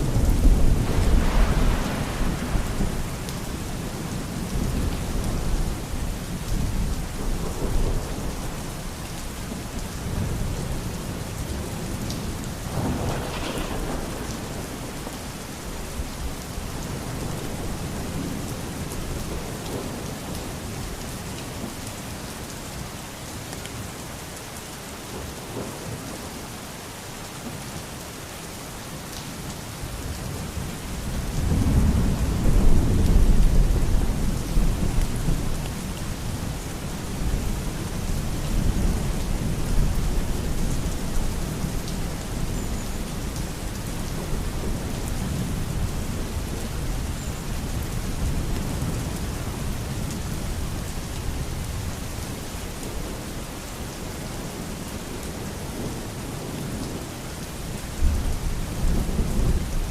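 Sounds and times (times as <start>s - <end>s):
low rolling thunder: 0.0s - 9.0s, 10.0s - 20.5s, 30.3s - 42.5s, 58.0s - 59.9s
steady rain: 0.0s - 59.9s.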